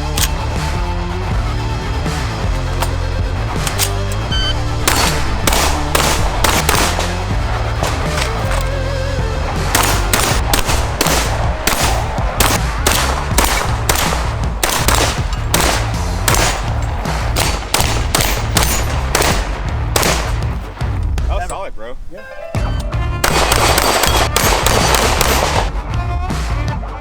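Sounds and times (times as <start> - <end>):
music with heavy bass beat: 0.0 - 21.4
rapid shotgun fire: 4.8 - 8.7, 9.6 - 20.6, 23.2 - 25.8.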